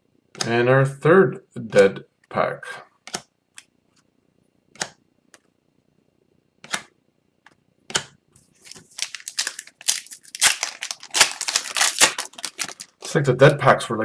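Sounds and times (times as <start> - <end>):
wrapper crinkling and tearing: 8.6 - 13.3
trading cards snapping: 8.7 - 13.2.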